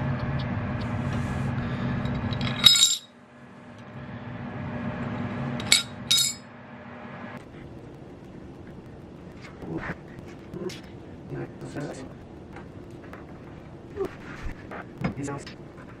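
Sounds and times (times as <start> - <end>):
low hum: 0.0 - 16.0
hard objects clinking: 2.1 - 3.1, 5.6 - 6.4.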